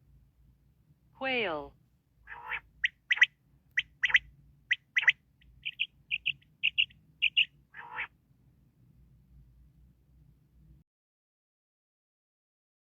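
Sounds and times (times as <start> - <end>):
quail calling: 2.3 - 8.1.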